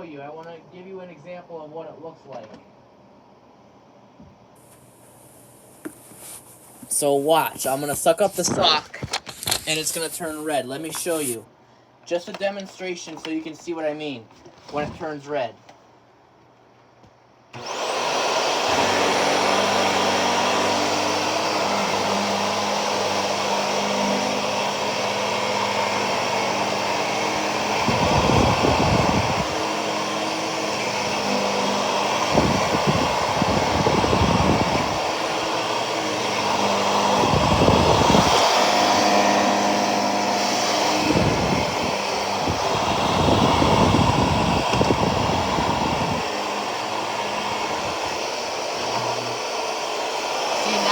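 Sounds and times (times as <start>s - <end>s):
upright vacuum cleaner running: 4.6s - 11.4s, 17.6s - 50.9s.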